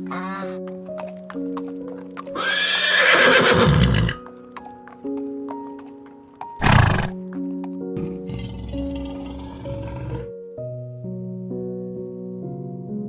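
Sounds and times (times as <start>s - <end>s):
horse neighing: 2.4s - 4.2s, 6.6s - 7.2s.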